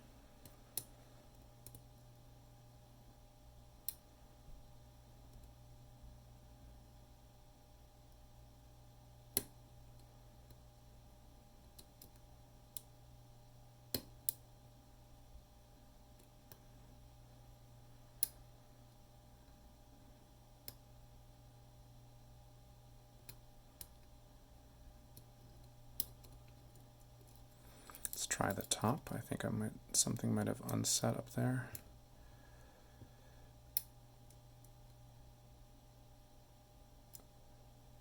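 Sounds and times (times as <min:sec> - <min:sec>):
faint low hum: 0:00.0 - 0:38.0.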